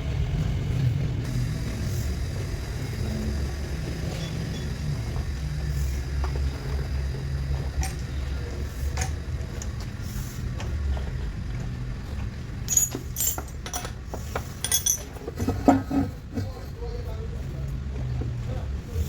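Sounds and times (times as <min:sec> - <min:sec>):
low machine hum: 0:00.0 - 0:19.0
metallic clinks: 0:12.6 - 0:15.2.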